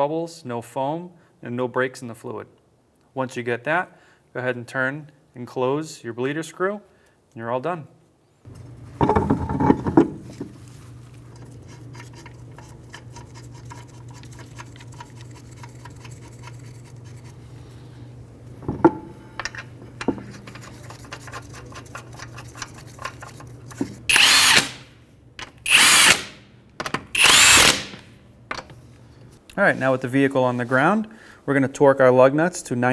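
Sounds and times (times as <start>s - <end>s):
low steady hum: 8.5s - 31.4s
power tool spinning lug nuts: 24.1s - 24.8s, 25.6s - 26.4s, 27.2s - 28.0s.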